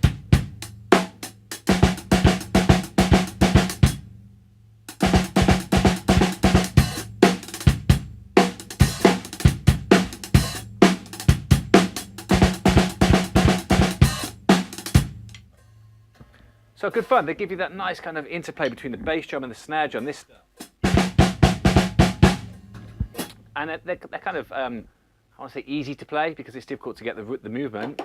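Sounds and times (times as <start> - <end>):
snare drum strokes and flams: 5.0 - 15.3.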